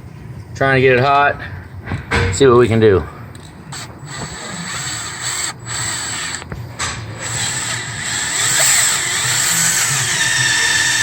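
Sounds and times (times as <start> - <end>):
torch flame hissing: 3.7 - 11.0.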